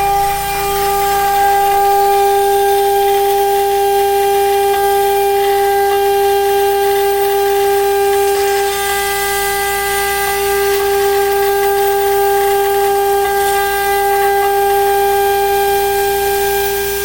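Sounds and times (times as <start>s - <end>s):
router spindle high whine: 0.0s - 17.0s.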